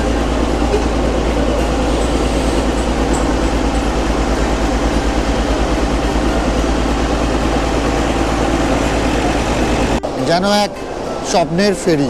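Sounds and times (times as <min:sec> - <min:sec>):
locomotive engine rumbling: 0:00.0 - 0:12.0.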